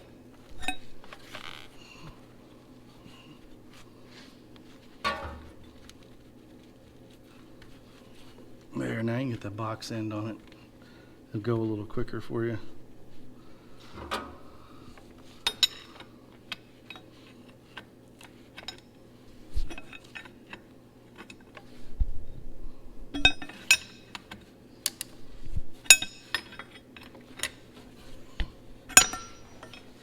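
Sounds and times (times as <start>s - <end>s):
steady low hum: 0.0s - 17.0s
wrench clinking against bolts: 29.0s - 30.0s.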